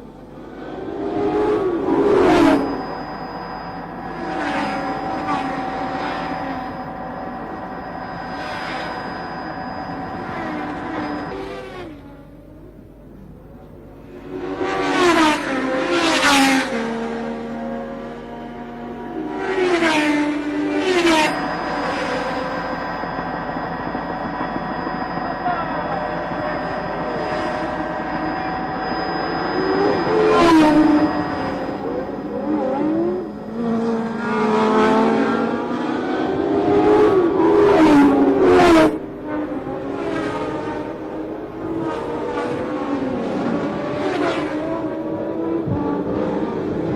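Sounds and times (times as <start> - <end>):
racing cars passing at speed: 0.0 - 12.2, 14.0 - 46.9.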